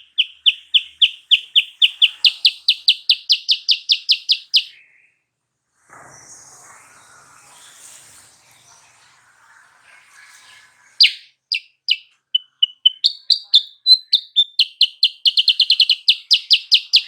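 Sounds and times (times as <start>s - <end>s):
bird chirping: 0.0s - 5.0s, 11.0s - 17.0s.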